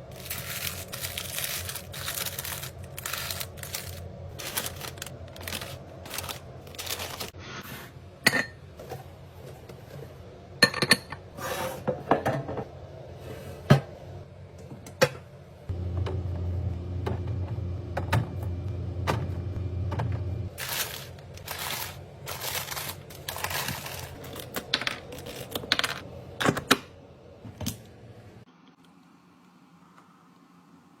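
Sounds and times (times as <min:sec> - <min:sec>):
items being handled: 0:00.0 - 0:10.3, 0:17.0 - 0:27.8
kitchen appliance humming: 0:00.0 - 0:10.3, 0:14.6 - 0:28.5.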